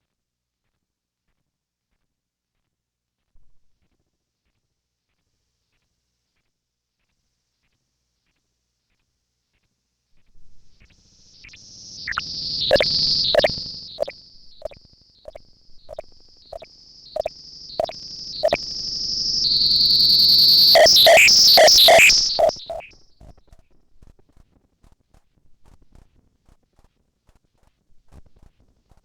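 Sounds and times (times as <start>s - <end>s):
short synth blips: 12.1s - 16.6s, 17.2s - 18.6s, 20.7s - 22.9s
high whistling synth tone: 12.7s - 16.0s, 17.2s - 18.6s, 20.0s - 22.9s
glitchy synth chatter: 17.2s - 18.6s, 20.8s - 22.9s.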